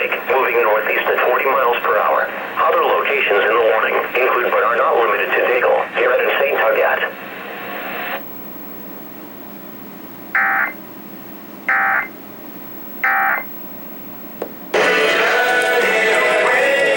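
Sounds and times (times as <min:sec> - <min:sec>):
buzzy digital data tones: 0:10.3 - 0:10.8, 0:11.7 - 0:12.1, 0:12.9 - 0:13.8
loud music: 0:14.8 - 0:16.9.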